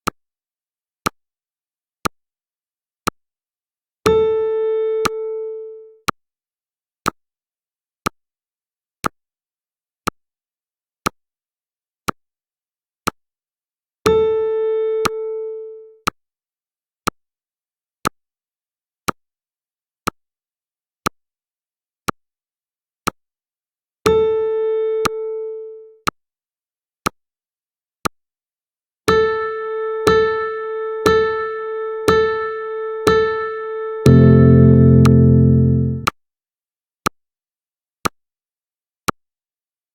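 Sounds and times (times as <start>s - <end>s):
piano-like beeps: 29.1s - 36.1s
electronic chime tone: 34.0s - 36.0s
timer ticking: 34.0s - 36.1s.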